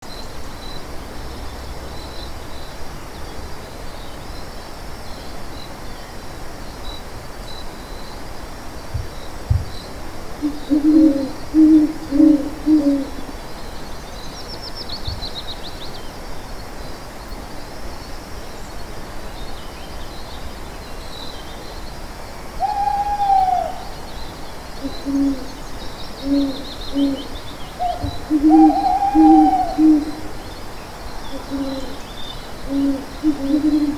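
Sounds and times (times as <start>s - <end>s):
background hiss: 0.0s - 33.9s
owl hooting: 10.4s - 13.4s, 22.6s - 24.2s, 24.8s - 30.4s, 31.2s - 33.9s
rising and falling call: 22.6s - 24.0s, 26.3s - 30.3s.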